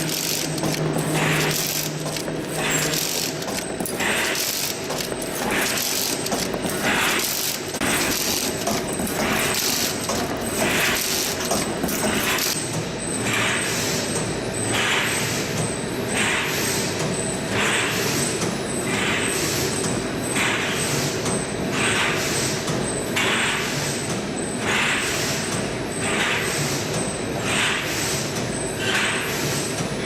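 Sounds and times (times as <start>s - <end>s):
wire netting machine running: 0.0s - 12.6s.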